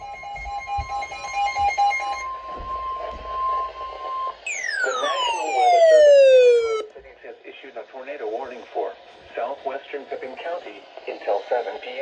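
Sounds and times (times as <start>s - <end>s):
steady high tone: 4.4s - 6.9s
fast electronic beeps: 4.5s - 6.9s
tone sweeping down in pitch: 4.5s - 6.9s.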